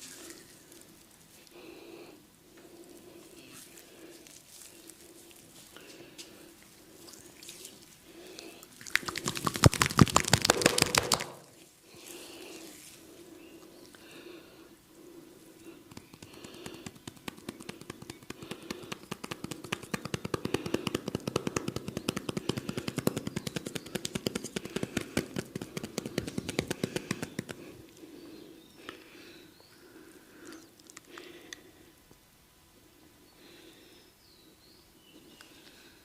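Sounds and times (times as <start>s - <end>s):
hands slapping skin rapidly: 8.8s - 11.5s, 15.8s - 27.8s.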